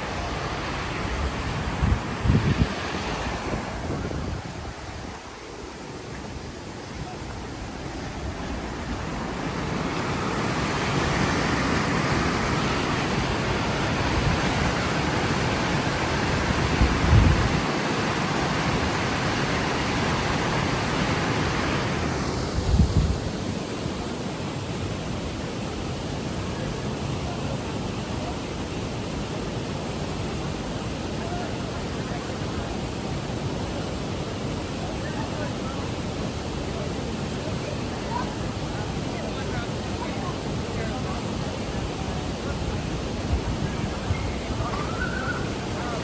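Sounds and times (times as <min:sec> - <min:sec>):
waterfall rushing: 0:00.0 - 0:46.0.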